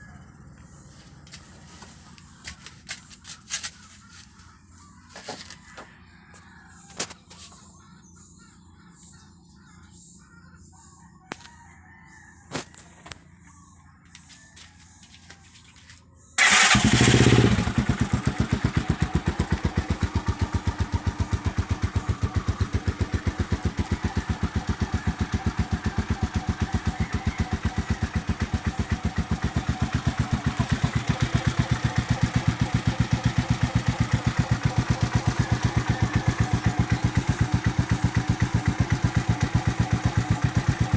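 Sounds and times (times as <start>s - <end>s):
motorcycle engine starting and idling: 16.4s - 40.9s
birds chirping: 18.9s - 40.9s.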